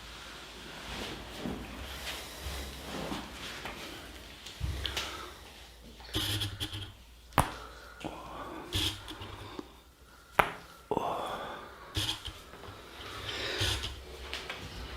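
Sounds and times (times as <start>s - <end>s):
soft rustling: 0.0s - 10.8s
sharp hand snaps: 7.4s - 7.6s, 10.4s - 10.6s.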